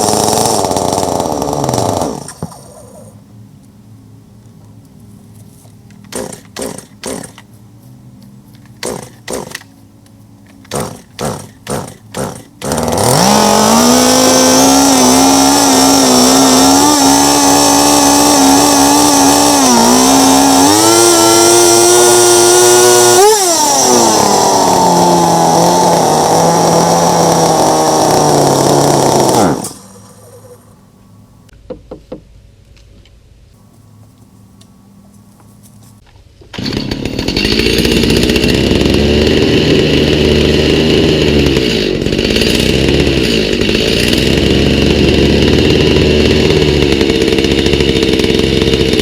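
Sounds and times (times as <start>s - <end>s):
chainsaw engine running: 0.0s - 3.2s, 6.1s - 7.5s, 8.8s - 9.7s, 10.6s - 30.8s, 36.6s - 49.0s.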